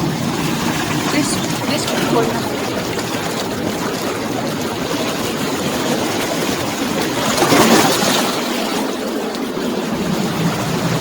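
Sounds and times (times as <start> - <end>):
river rapids rushing: 0.0 - 4.2.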